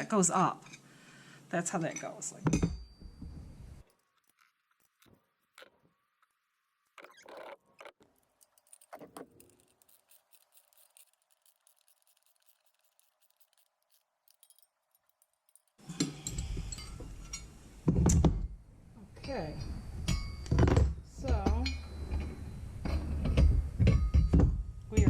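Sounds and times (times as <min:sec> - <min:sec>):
metallic clicks of bolts and nuts: 0:07.0 - 0:17.6.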